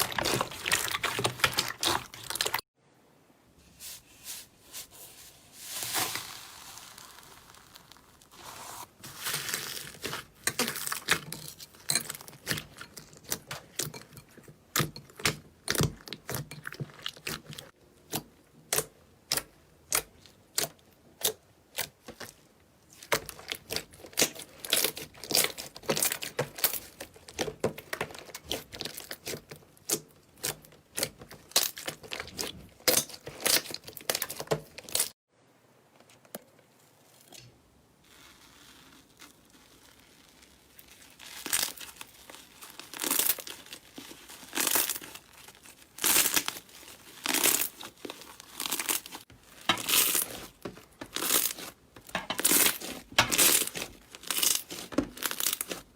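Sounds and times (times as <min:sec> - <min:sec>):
slime crackling and popping: 0:05.7 - 0:11.6, 0:38.0 - 0:55.9.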